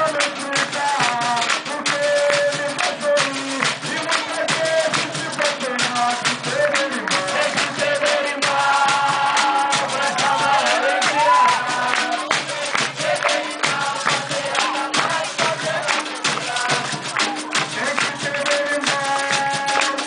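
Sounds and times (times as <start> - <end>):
fast percussion strikes: 0.0 - 20.0
person singing: 0.0 - 20.0.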